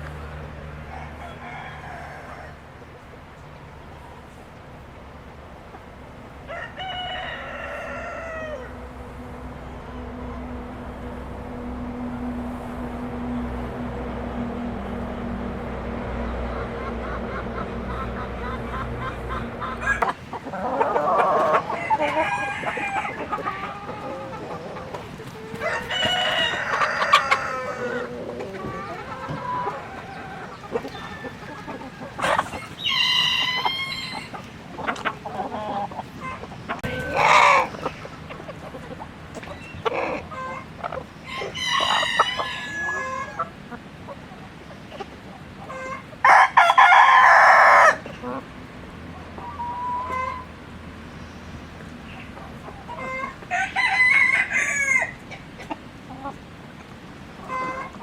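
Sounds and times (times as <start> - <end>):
hens clucking: 0.0 - 58.0
roosters crowing: 0.7 - 3.0, 6.3 - 38.5, 39.4 - 43.6, 45.7 - 48.4, 52.1 - 55.6.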